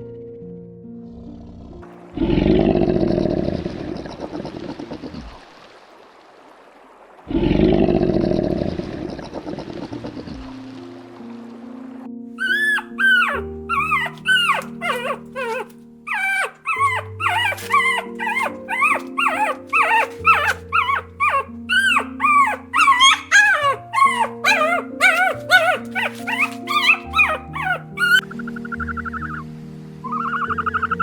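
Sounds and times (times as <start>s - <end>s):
background music: 10.0s - 31.0s
dog whimpering and yipping: 12.4s - 28.2s.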